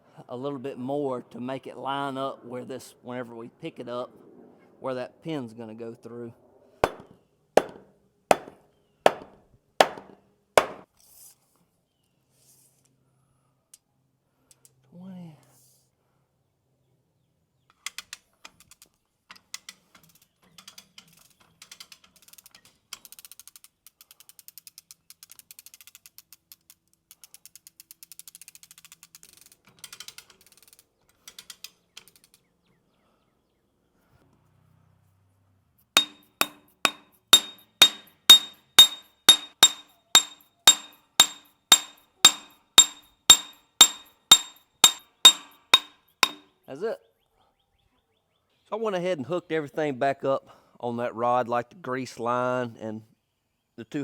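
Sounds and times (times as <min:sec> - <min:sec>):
hammer striking steel: 0:06.8 - 0:10.8, 0:36.0 - 0:46.4
faint clicking on metal parts: 0:36.0 - 0:46.4.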